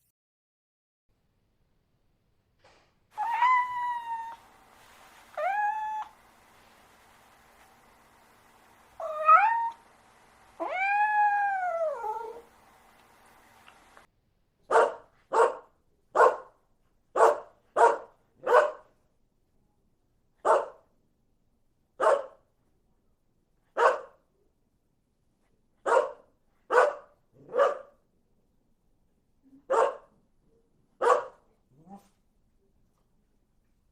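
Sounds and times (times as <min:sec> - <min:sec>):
cat meowing: 0:03.2 - 0:06.2, 0:09.0 - 0:09.8, 0:10.6 - 0:12.5
dog barking: 0:14.7 - 0:18.9, 0:20.4 - 0:20.9, 0:22.0 - 0:22.4, 0:23.7 - 0:24.2, 0:25.8 - 0:28.0, 0:29.6 - 0:30.2, 0:31.0 - 0:31.9.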